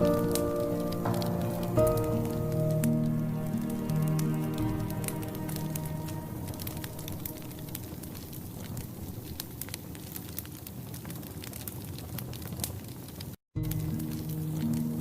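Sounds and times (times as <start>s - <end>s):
low rushing noise: 0.0s - 9.5s
wood fire crackling and popping: 0.0s - 15.0s.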